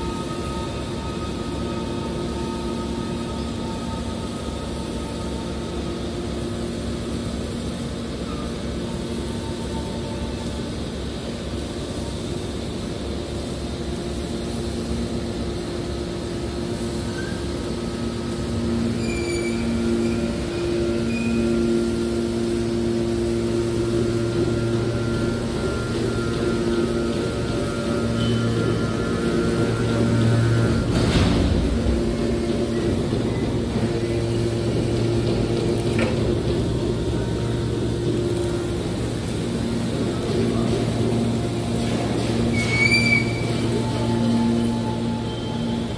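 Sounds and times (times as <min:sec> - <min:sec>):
baler machine hum: 0:00.0 - 0:45.9
faint high squeals: 0:18.8 - 0:21.8, 0:24.5 - 0:30.8, 0:42.4 - 0:45.9.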